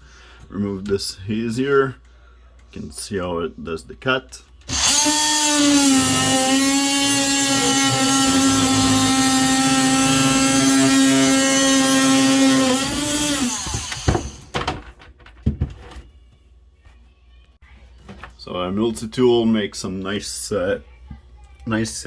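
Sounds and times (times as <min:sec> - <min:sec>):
oscillating multi-tool buzzing: 0:04.7 - 0:14.5.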